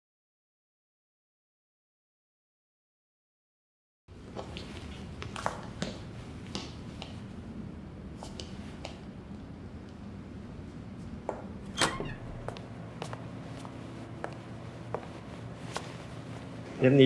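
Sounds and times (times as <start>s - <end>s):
low room noise: 4.1s - 17.0s.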